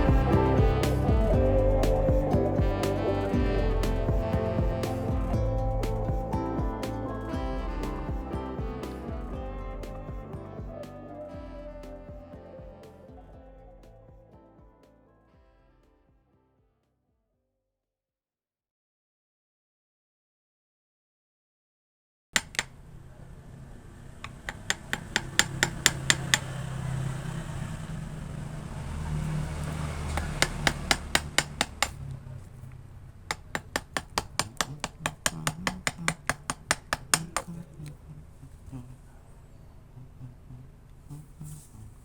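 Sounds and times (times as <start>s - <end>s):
hand tool tapping wood: 22.4s - 22.7s, 24.3s - 26.5s, 30.1s - 32.0s, 33.3s - 37.6s.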